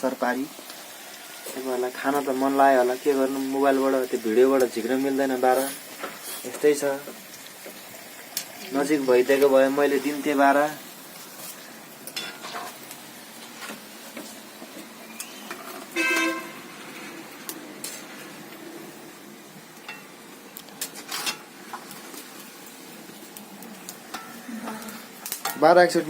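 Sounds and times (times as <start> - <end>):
fritters sizzling in oil: 0.0 - 26.0
metal utensil clinking and scraping: 11.4 - 12.8, 17.8 - 18.3, 20.8 - 21.5.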